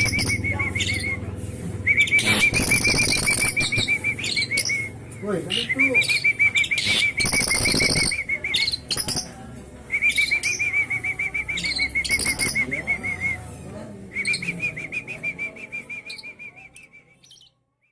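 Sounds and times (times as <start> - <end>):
bird chattering trill: 0.0 - 1.2, 1.9 - 9.4, 11.6 - 12.7
high bird chirps: 0.0 - 1.2, 1.9 - 13.2.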